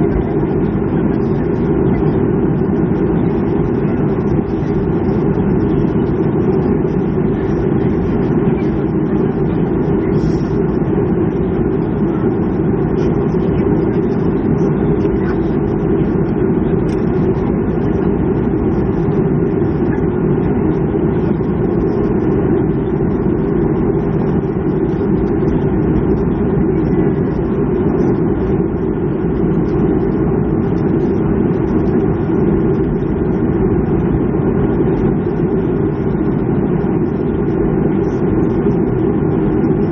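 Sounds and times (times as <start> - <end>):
airliner cabin drone: 0.0 - 39.9.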